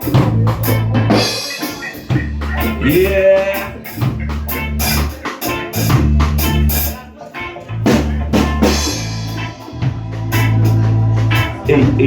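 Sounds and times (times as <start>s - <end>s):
sustained low bass notes: 0.0s - 1.3s, 2.0s - 5.1s, 7.6s - 12.0s
drum kit groove: 0.0s - 12.0s.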